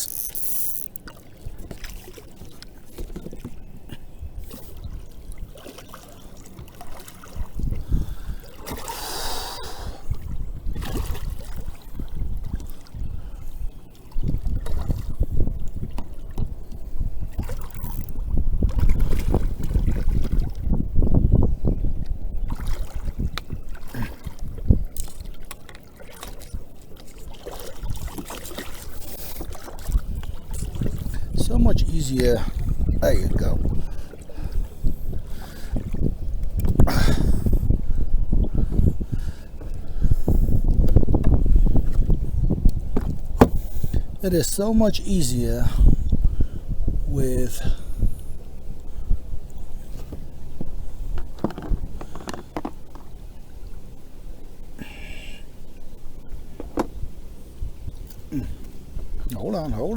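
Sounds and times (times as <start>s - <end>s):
water trickling and splashing: 0.0s - 46.5s
knocks and thumps in boat: 1.0s - 8.9s, 14.1s - 44.6s, 49.8s - 53.2s, 56.3s - 57.2s
knocks against kayak hull: 42.9s - 43.8s, 50.0s - 53.0s, 56.6s - 57.0s.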